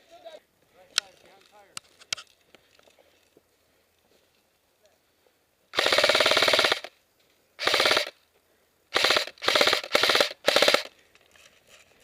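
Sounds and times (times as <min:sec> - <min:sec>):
airsoft gun full-auto bursts: 0:05.7 - 0:07.0, 0:07.6 - 0:08.2, 0:08.9 - 0:10.9.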